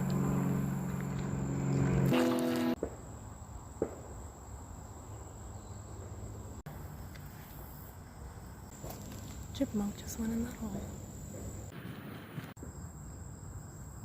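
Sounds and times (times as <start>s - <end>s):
low steady hum: 0.0s - 2.8s
insects trilling: 0.0s - 14.0s.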